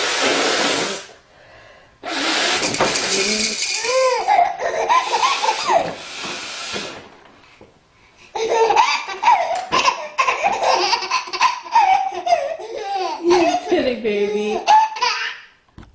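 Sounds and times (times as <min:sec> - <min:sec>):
high-pitched laughter: 0:03.8 - 0:05.9.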